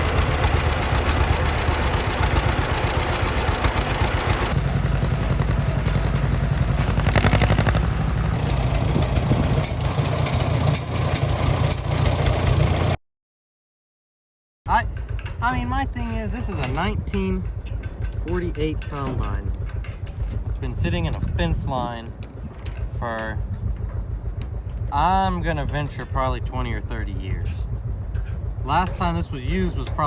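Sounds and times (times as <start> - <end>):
clatter of working parts: 0.0 - 4.6, 8.4 - 13.0, 14.9 - 24.0, 27.4 - 30.0
combine harvester engine: 0.0 - 13.0, 15.0 - 30.0.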